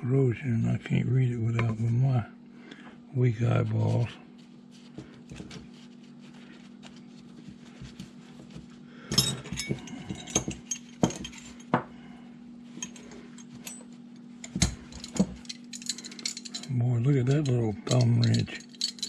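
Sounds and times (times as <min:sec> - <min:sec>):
low steady hum: 0:00.0 - 0:19.0
metal hand tools clinking: 0:12.8 - 0:19.0.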